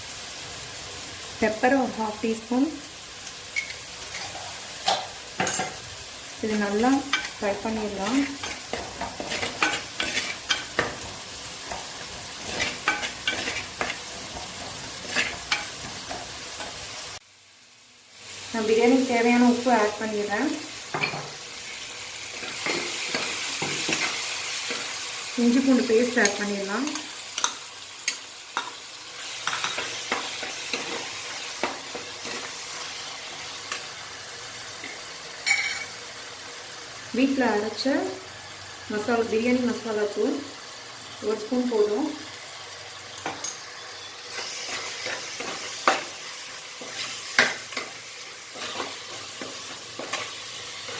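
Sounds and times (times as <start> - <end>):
food sizzling in hot oil: 0.0 - 50.9
spoon scraping and knocking pan: 3.6 - 5.9, 6.6 - 16.9, 20.9 - 21.4, 22.3 - 25.0, 26.1 - 33.9, 34.8 - 35.9, 43.2 - 50.9.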